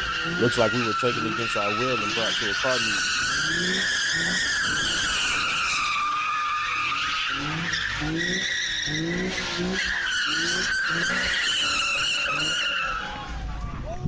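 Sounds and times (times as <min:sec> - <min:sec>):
car tyres screeching: 0:02.8 - 0:13.2.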